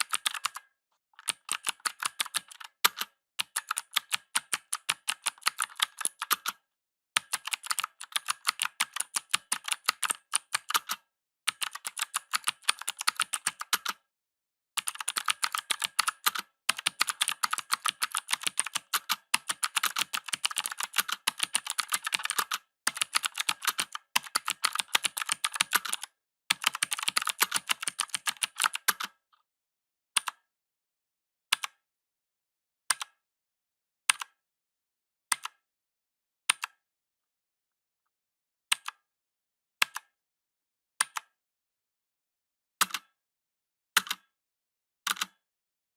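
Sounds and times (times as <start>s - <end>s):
mechanical keyboard typing: 0.0s - 6.6s, 7.2s - 14.0s, 14.8s - 29.2s, 45.1s - 45.4s.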